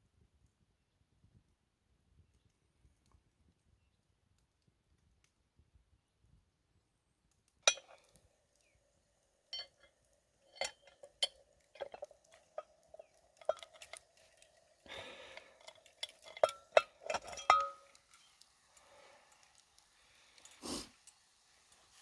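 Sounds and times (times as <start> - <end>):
metal clinking on cast iron pot: 7.7 - 8.1, 9.5 - 9.9, 10.5 - 19.8, 20.4 - 22.0
scrape on pot: 20.4 - 21.0.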